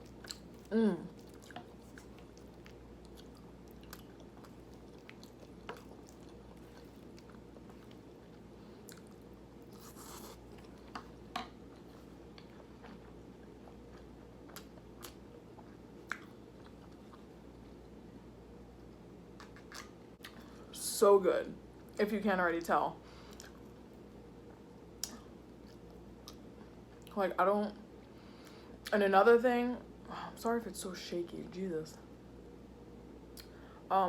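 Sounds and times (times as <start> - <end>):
person chewing food: 0.0 - 17.9, 24.4 - 27.1
low steady hum: 0.0 - 34.0.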